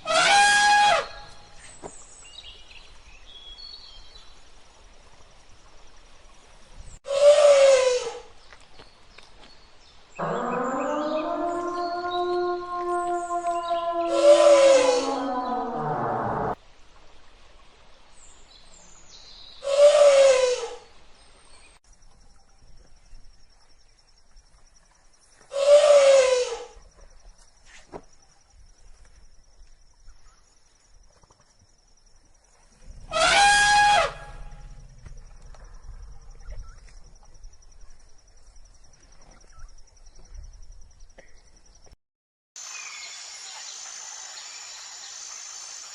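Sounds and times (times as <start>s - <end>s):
elephant trumpeting: 0.0s - 1.3s, 7.1s - 8.2s, 10.2s - 16.6s, 19.6s - 20.8s, 33.0s - 34.8s.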